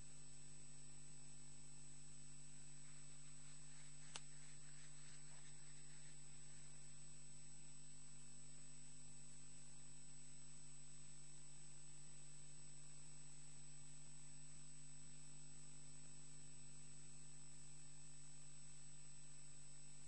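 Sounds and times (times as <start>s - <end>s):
electrical mains hum: 0.0s - 20.0s.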